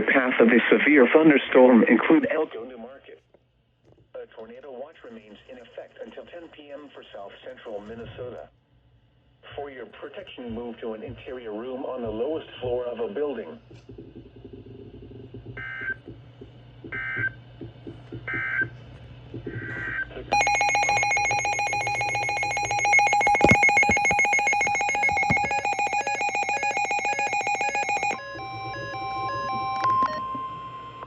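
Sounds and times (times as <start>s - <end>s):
stepping beeps: 19.5s - 31.0s.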